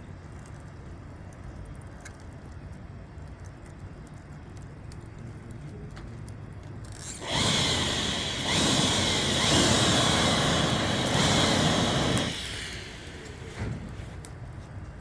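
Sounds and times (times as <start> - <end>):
small motor whirring: 6.9 - 13.4.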